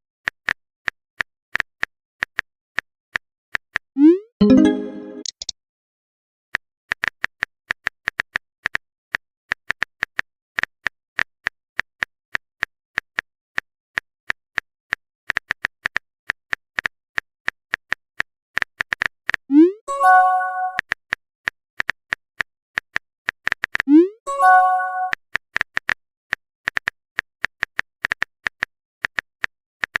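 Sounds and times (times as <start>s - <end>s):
keyboard typing clicks: 4.0s - 5.5s.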